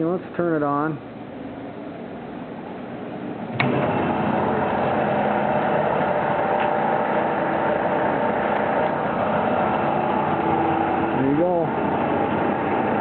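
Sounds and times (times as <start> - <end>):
bandsaw motor and blade running: 3.6 - 13.0.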